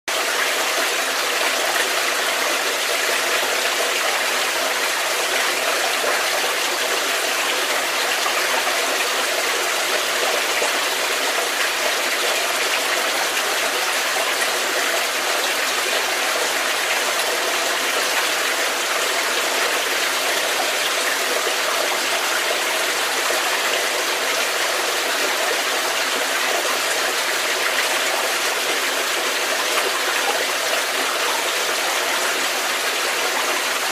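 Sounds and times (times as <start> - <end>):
stream water flowing and splashing: 0.1 - 33.9.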